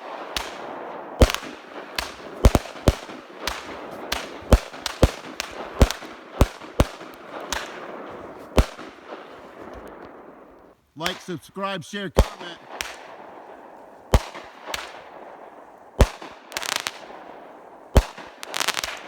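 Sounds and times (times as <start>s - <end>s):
fireworks bangs: 0.0s - 19.0s
fireworks crackling hiss: 1.2s - 6.0s, 14.7s - 19.0s.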